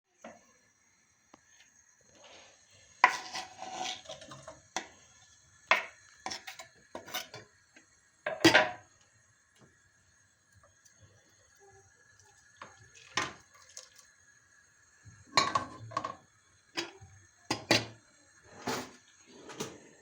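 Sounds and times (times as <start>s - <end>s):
dishes and pots clinking: 3.0s - 5.0s, 5.7s - 7.5s, 8.3s - 8.8s, 12.6s - 13.8s, 15.3s - 16.2s, 16.8s - 19.9s
rattle of kitchenware: 5.7s - 7.4s, 8.3s - 8.8s, 15.3s - 16.2s, 16.8s - 19.9s.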